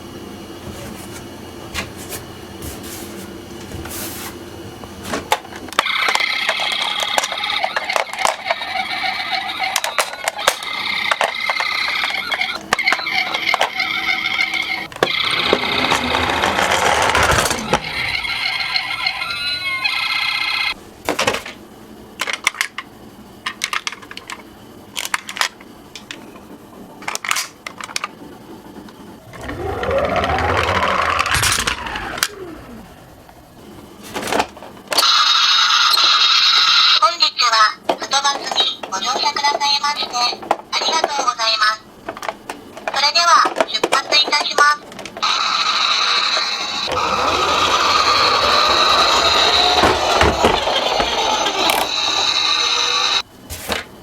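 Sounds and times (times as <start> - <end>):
toy electronic siren wailing: 5.8 - 20.8, 35.0 - 37.0, 45.2 - 53.2
toy cars clattering on slope: 14.9 - 18.6, 46.9 - 53.2.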